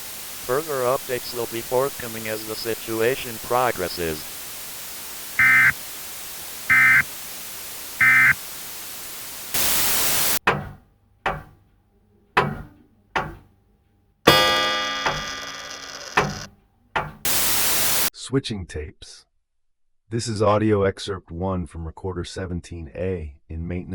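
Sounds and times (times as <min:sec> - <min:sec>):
two-tone data burst warbles: 0:00.0 - 0:07.2, 0:07.9 - 0:08.5, 0:14.3 - 0:16.5
static hiss: 0:00.0 - 0:10.4, 0:14.3 - 0:16.5, 0:17.2 - 0:18.1
sharp thunks: 0:10.4 - 0:11.6, 0:12.4 - 0:13.5, 0:17.0 - 0:17.3
clattering impact ringing: 0:14.3 - 0:17.2.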